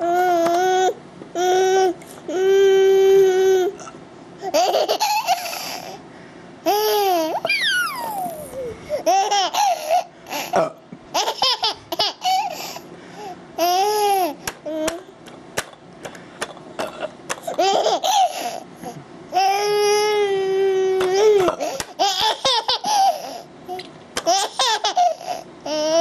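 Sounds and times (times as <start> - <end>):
small child laughing: 4.4 - 6.0, 6.7 - 10.5, 11.1 - 12.8, 17.4 - 18.6, 21.1 - 26.0
child squealing: 7.2 - 8.8.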